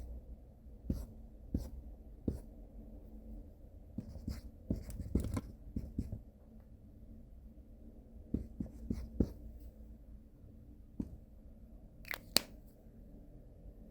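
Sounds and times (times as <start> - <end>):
marker scratching on whiteboard: 0.9 - 2.5, 4.0 - 6.2, 8.3 - 9.4.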